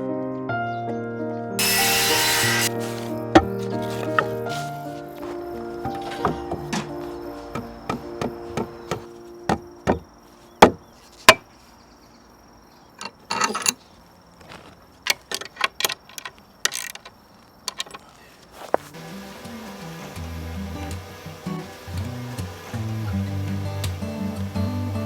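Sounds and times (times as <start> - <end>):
short rasping bursts: 1.6 - 8.6
knocks on wooden boards: 3.4 - 11.4.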